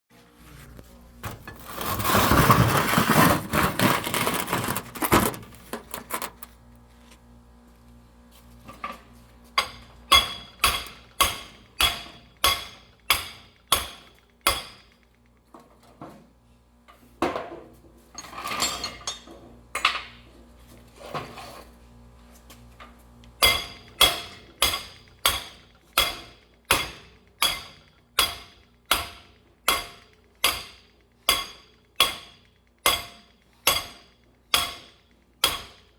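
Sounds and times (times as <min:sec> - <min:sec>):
hammer striking metal vise: 0:09.6 - 0:14.9, 0:23.4 - 0:35.9.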